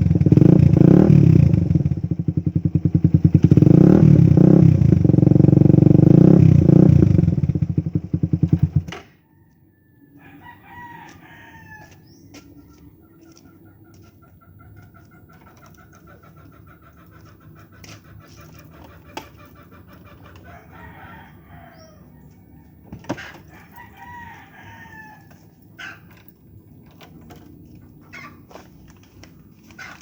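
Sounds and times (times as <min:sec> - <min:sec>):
rooster crowing: 0:09.1 - 0:13.6, 0:20.2 - 0:26.3
chickens clucking: 0:09.3 - 0:30.0.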